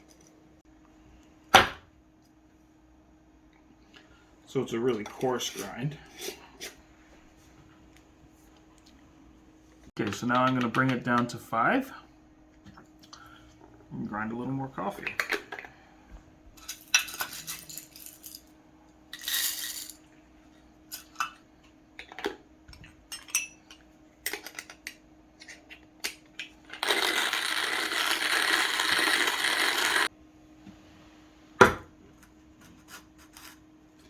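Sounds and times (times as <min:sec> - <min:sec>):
hand grinder grinding coffee beans: 0:26.7 - 0:30.1.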